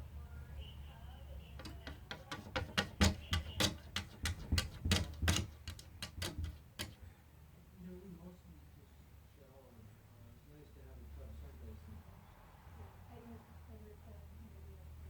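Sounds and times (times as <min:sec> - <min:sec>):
cat flap clicking: 0:01.6 - 0:07.0.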